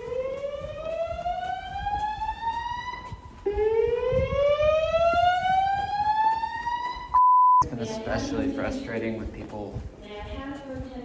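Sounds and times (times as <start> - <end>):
fire alarm whoop tone: 0.2 - 7.6.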